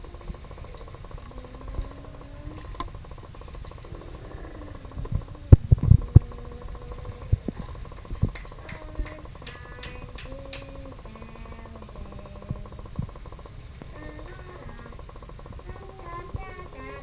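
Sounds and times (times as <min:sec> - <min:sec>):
toy train motor hum: 0:00.0 - 0:17.0
wheel clatter on plastic track: 0:00.0 - 0:17.0.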